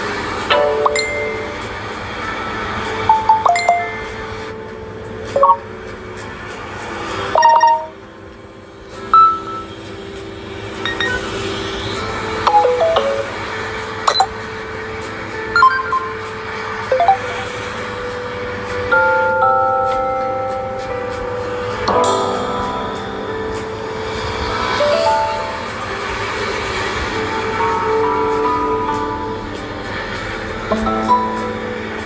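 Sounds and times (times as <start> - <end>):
bell-like ringtone chimes: 0.5 - 1.6, 3.1 - 4.2, 5.4 - 5.8, 7.3 - 8.0, 9.1 - 9.8, 10.8 - 11.4, 12.5 - 13.3, 14.1 - 14.4, 15.5 - 17.5.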